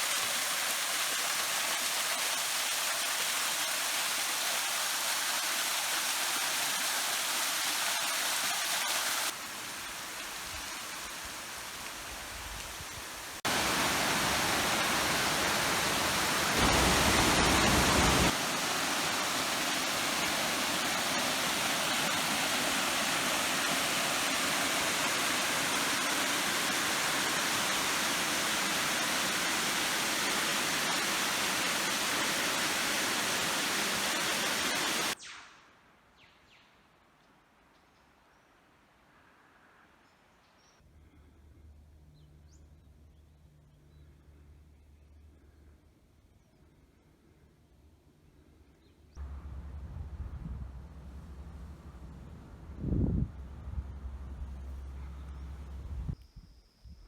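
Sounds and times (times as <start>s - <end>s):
rush of flowing water: 0.0s - 35.2s.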